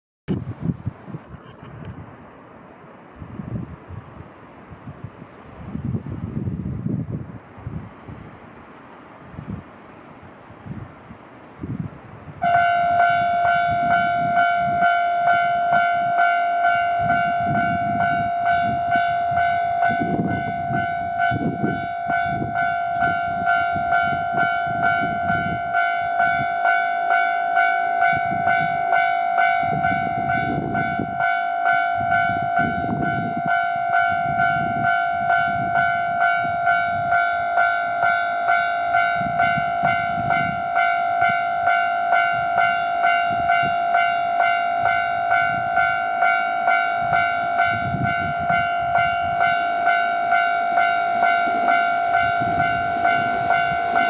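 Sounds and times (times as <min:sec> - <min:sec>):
railroad crossing alarm clanging: 0:12.4 - 0:54.0.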